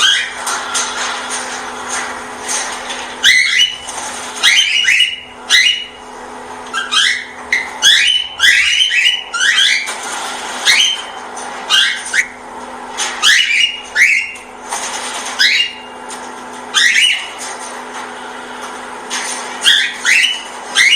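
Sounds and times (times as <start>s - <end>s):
parrot chirping: 0.0s - 0.4s, 3.2s - 6.0s, 6.7s - 12.4s, 13.2s - 14.5s, 15.4s - 15.9s, 16.7s - 17.4s, 19.6s - 20.9s.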